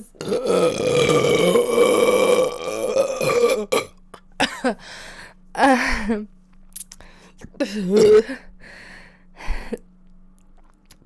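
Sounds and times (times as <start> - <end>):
woman burping loudly: 0.0 - 4.8, 7.6 - 8.4.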